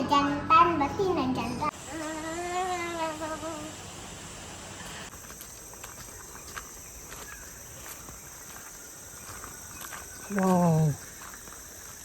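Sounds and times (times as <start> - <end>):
insects droning: 1.7 - 12.0
light footsteps: 5.1 - 12.0.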